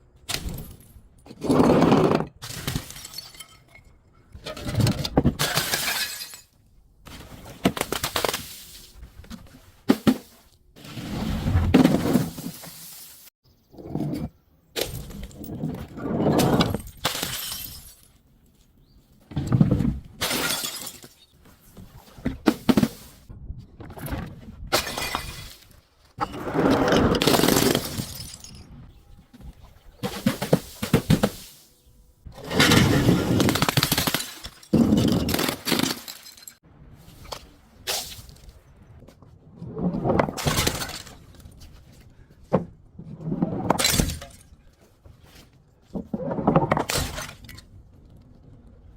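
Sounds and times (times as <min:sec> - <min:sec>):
glass breaking and crunching: 0:05.4 - 0:06.6, 0:16.7 - 0:18.2, 0:20.2 - 0:21.3, 0:32.6 - 0:36.6.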